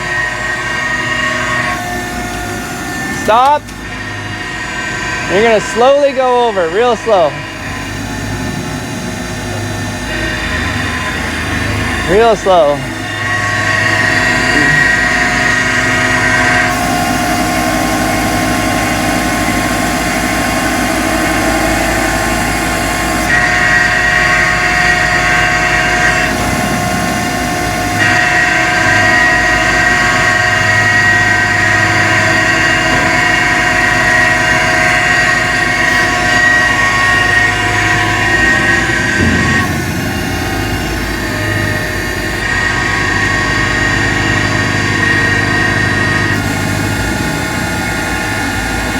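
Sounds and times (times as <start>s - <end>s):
high hydraulic whine: 0.0s - 48.9s
truck engine and hydraulic crane: 0.0s - 48.9s.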